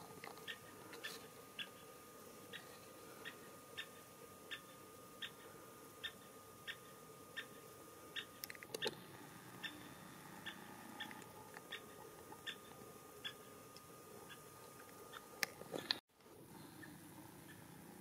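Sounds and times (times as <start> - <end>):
woodpecker kik call: 2.5 - 9.0, 9.6 - 13.6.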